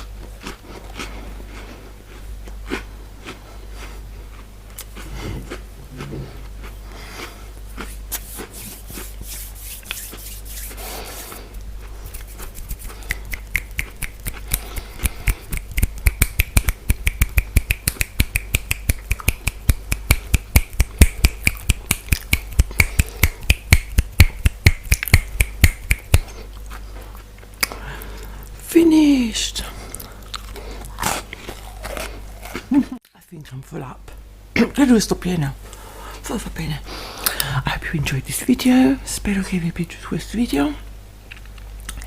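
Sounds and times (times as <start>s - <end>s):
crisp mouth clicks and crunches: 11.6s - 28.3s, 41.2s - 42.0s.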